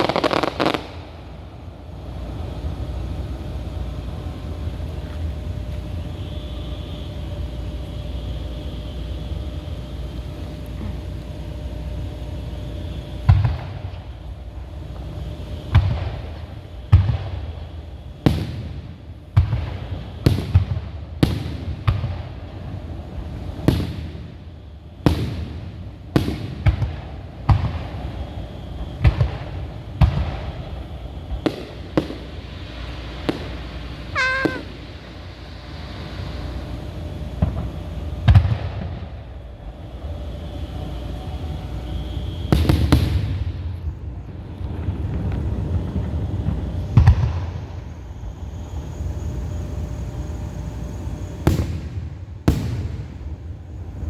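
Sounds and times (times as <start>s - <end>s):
fireworks booming: 0.0s - 4.0s, 15.0s - 24.4s, 25.1s - 39.8s, 42.4s - 48.8s, 51.4s - 54.0s
fireworks crackle: 0.0s - 8.2s, 13.2s - 41.2s, 41.8s - 54.0s
low continuous rumble: 0.0s - 54.0s
wavering whistle-like tone: 34.1s - 35.1s.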